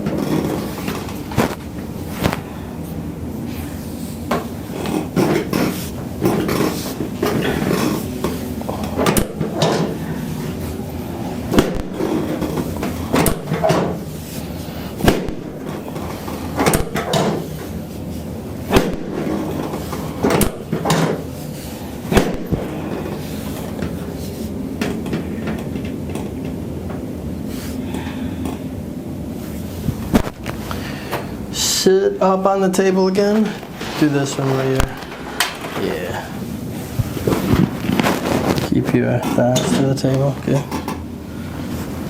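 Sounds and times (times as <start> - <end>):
sharp knocks and clunks of back: 11.5 - 14.1, 15.0 - 17.7, 18.7 - 21.3.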